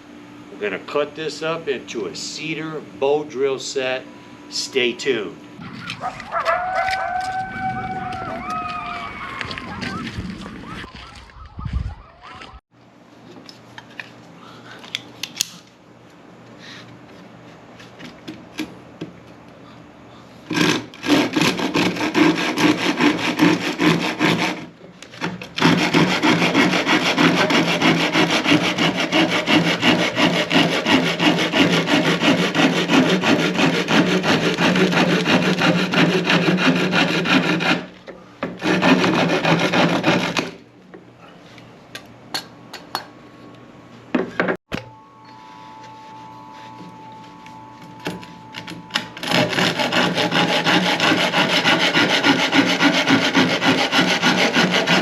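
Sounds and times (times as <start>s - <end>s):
saw cutting wood: 20.5s - 40.6s, 45.8s - 55.0s.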